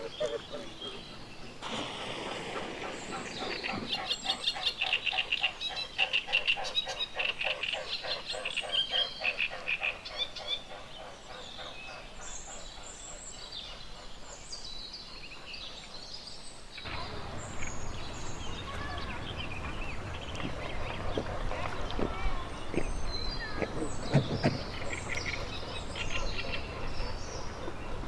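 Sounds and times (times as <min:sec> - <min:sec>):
swan wingbeats throbbing: 0:01.6 - 0:04.6.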